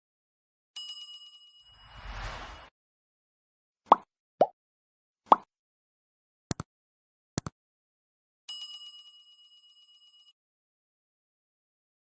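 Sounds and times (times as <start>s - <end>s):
plop sound effects: 3.9s - 4.5s.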